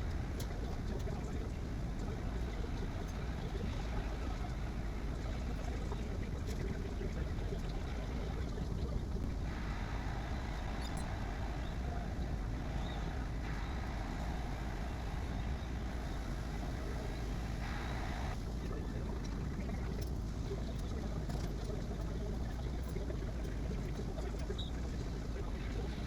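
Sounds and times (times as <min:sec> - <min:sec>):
three d printer whirring: 0:00.0 - 0:18.7.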